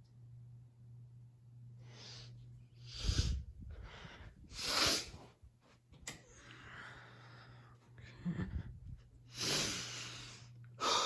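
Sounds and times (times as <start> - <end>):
ceiling fan motor humming: 0.0 - 11.0
breathy puffs of air: 1.8 - 5.4, 8.5 - 11.0.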